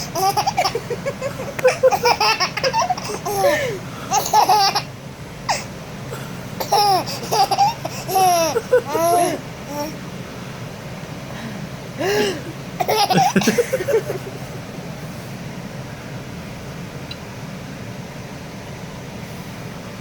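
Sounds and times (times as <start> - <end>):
baby giggling: 0.0 - 4.9, 5.5 - 10.0, 12.0 - 14.4.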